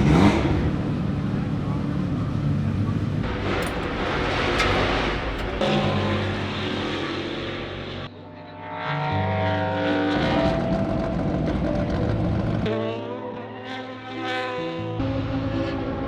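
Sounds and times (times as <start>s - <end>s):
race car engine accelerating: 3.2s - 6.2s.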